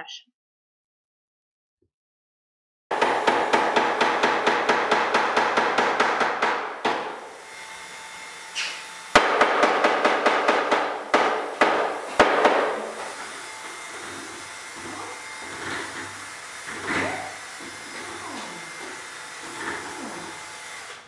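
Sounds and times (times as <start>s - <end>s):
hammer striking wood: 2.9s - 7.2s, 8.6s - 13.2s.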